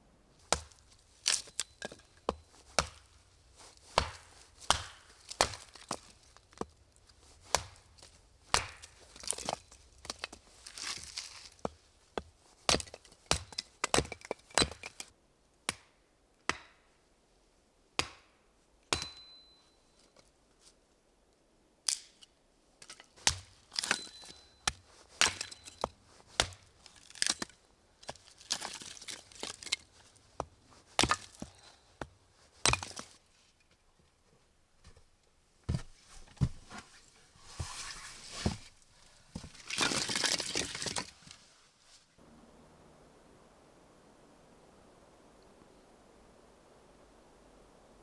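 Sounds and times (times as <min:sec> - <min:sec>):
high metallic ring: 0:19.0 - 0:20.0.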